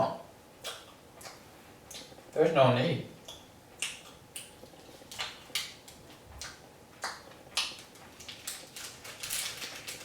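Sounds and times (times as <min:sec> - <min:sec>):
chewing mouth smacks and clicks: 0:00.6 - 0:02.2, 0:03.2 - 0:05.8.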